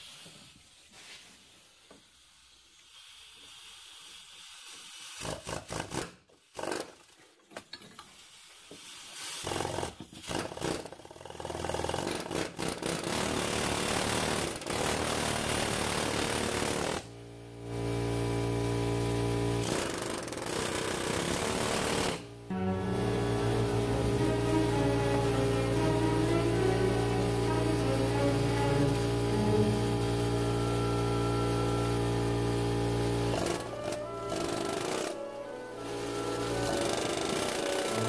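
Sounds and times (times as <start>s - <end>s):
pneumatic air hammer rattling: 2.8s - 17.1s, 19.6s - 22.3s, 33.3s - 35.2s, 36.4s - 38.0s.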